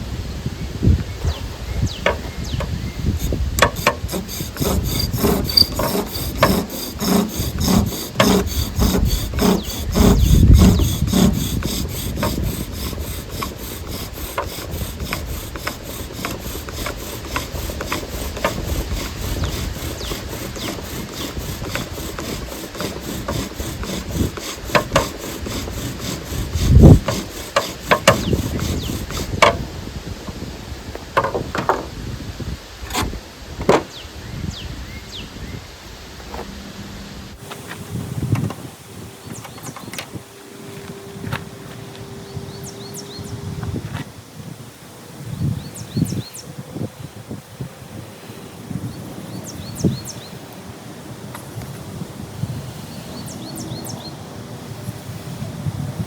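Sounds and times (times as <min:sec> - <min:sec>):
bow drill rasping grind: 0:02.0 - 0:29.8.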